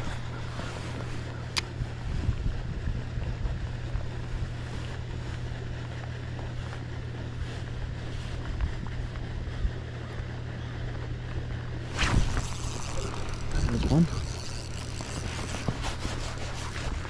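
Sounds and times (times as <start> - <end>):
wind buffeting microphone: 0.0 - 5.7
boat engine low hum: 0.0 - 17.0
water noise: 11.8 - 17.0.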